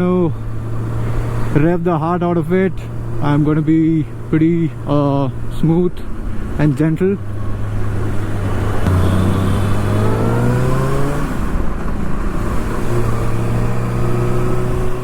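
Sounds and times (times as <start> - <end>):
motorcycle engine: 7.2 - 15.0.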